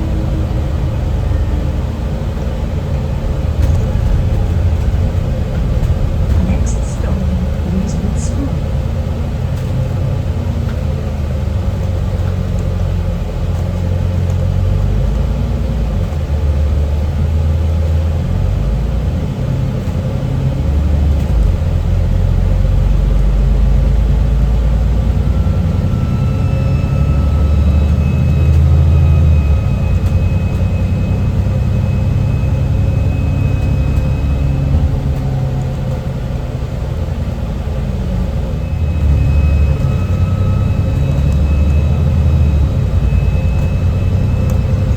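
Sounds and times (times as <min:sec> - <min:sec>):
bus engine rumbling: 0:00.0 - 0:44.9
high turbo whistle: 0:38.4 - 0:44.9.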